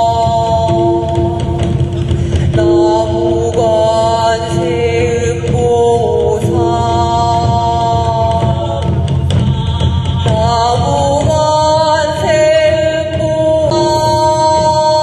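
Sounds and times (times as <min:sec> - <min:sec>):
steady low drumming: 0:00.0 - 0:15.0.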